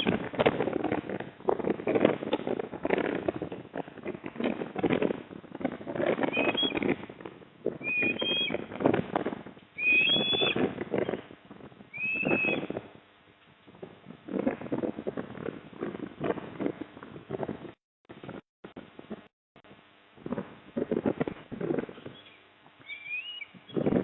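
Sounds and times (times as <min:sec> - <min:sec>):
osprey whistled calls: 0:06.3 - 0:06.8, 0:07.8 - 0:08.6, 0:09.8 - 0:11.2, 0:11.9 - 0:12.8, 0:22.0 - 0:23.9.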